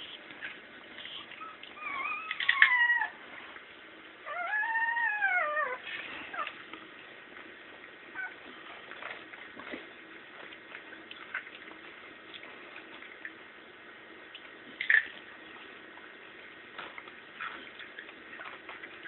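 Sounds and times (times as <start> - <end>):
puppies whining: 1.0 - 3.4, 4.2 - 6.6, 8.1 - 8.8.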